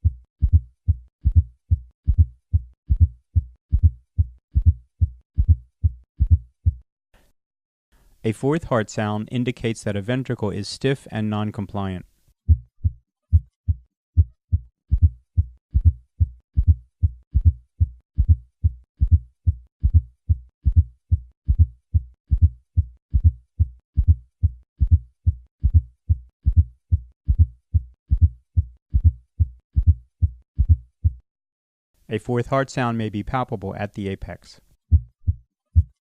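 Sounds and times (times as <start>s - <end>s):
heart sounds in gallop rhythm: 0.0s - 6.8s, 12.5s - 31.2s, 34.9s - 36.0s.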